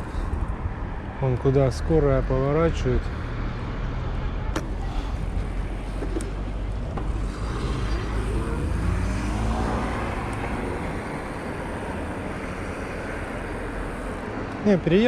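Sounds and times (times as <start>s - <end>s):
steady low traffic rumble: 0.0s - 15.0s
motor vehicle passing close: 3.2s - 14.2s.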